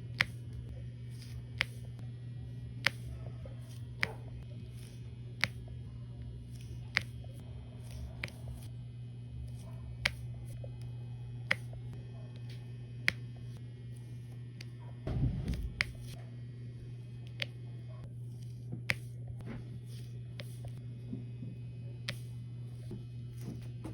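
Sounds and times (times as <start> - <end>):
steady low hum: 0.0 - 23.9.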